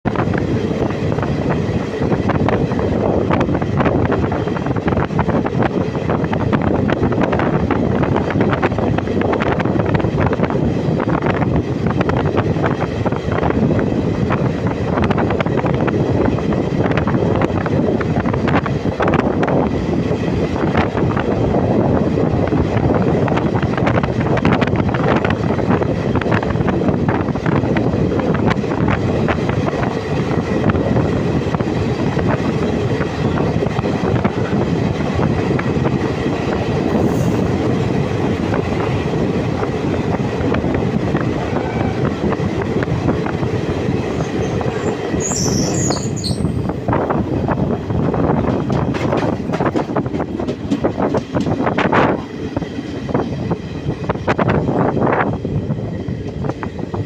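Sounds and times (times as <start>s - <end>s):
train running on rails: 0.0s - 57.0s.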